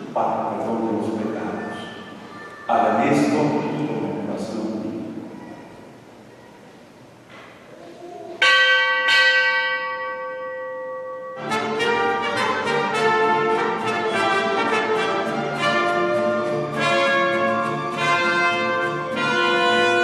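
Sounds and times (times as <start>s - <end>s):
bells ringing: 8.4s - 14.0s.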